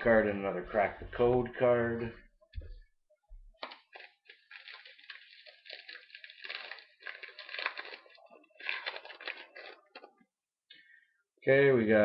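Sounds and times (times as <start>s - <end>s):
wrapper crinkling and tearing: 3.6s - 10.2s.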